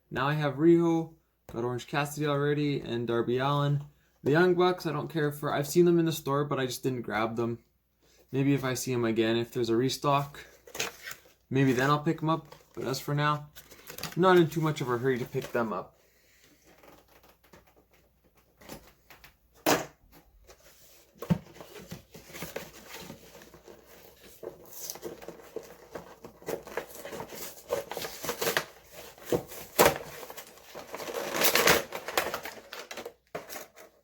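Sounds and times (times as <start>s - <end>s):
packaging crinkling and tearing: 22.1s - 34.0s.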